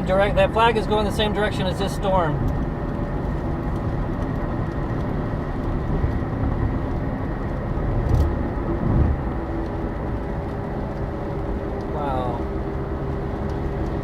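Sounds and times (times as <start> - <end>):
car noise: 0.0 - 14.0
gusty wind rushing: 2.3 - 11.8.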